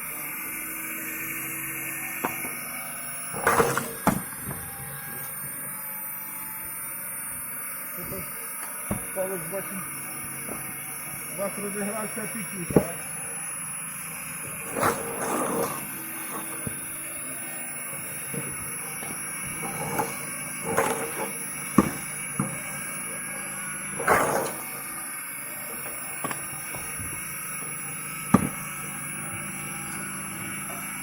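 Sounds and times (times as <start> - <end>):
split wood pieces clattering: 3.3 - 4.3, 17.9 - 22.7, 23.9 - 24.9
wood splitting knocks and cracks: 3.3 - 4.6, 18.1 - 22.8, 28.3 - 30.6.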